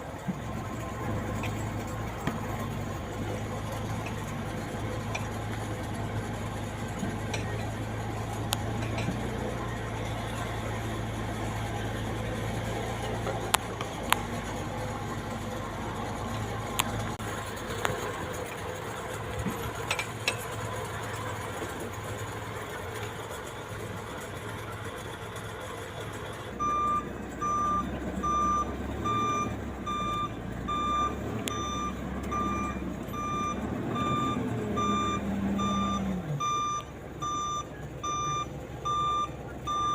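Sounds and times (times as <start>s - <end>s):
heavy machine engine running: 0.0s - 39.9s
reversing alarm beeping: 26.6s - 39.9s.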